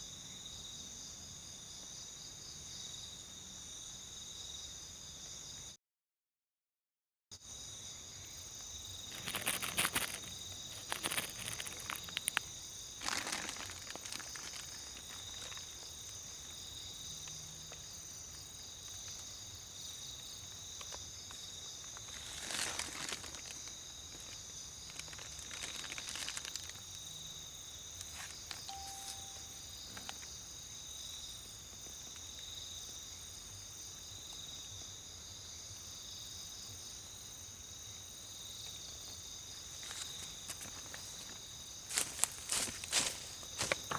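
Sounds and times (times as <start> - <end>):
crickets trilling: 7.4 - 43.9
rustling and crunching: 9.0 - 16.6, 20.8 - 27.1, 39.8 - 43.9.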